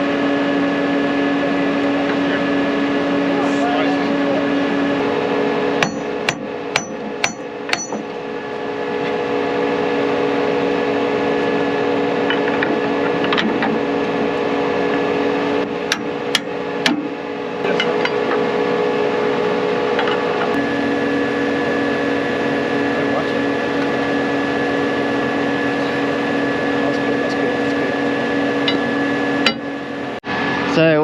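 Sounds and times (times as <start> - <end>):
hammer ringing on steel: 5.8 - 8.1.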